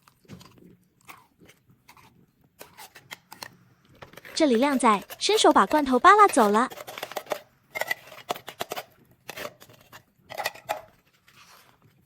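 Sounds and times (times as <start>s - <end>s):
metal tins clinking and scraping: 2.6s - 11.7s.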